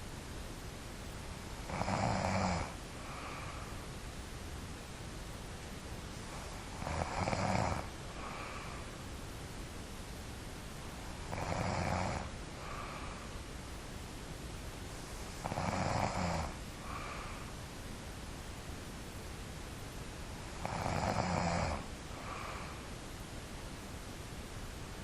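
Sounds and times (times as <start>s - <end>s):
person snoring: 1.7s - 3.6s, 6.7s - 8.7s, 11.3s - 13.2s, 15.4s - 17.4s, 20.6s - 22.8s.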